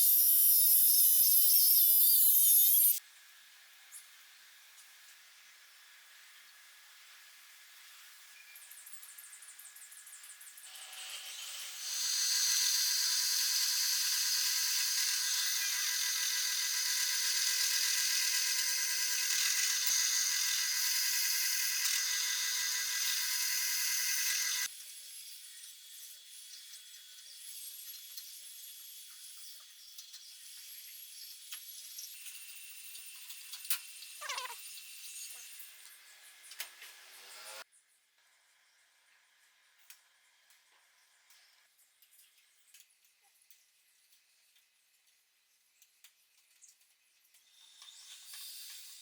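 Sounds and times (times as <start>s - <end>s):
angle grinder whine: 10.8s - 24.7s, 37.0s - 37.6s.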